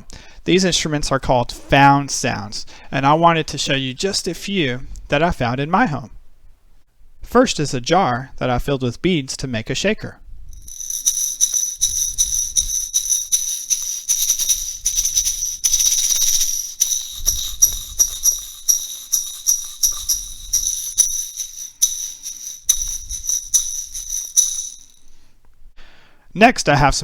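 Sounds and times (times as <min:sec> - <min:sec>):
bead jar shaker: 0:10.5 - 0:25.2.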